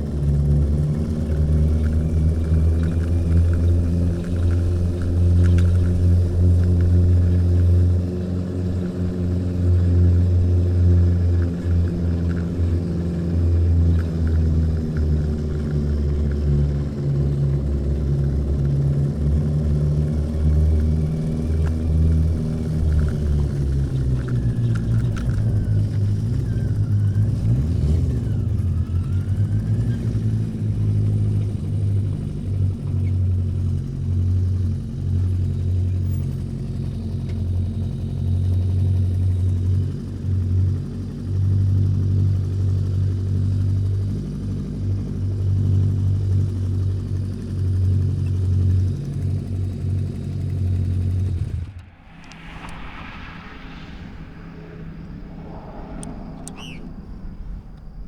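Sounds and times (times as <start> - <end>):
motorcycle engine running: 0.0 - 27.3.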